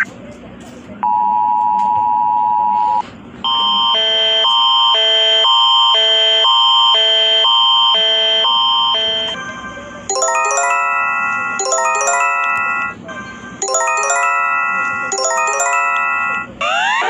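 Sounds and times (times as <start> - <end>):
alternating chord alert tone: 10.1 - 13.0, 13.6 - 16.5
two-note alert tone: 10.1 - 13.0, 13.6 - 16.5.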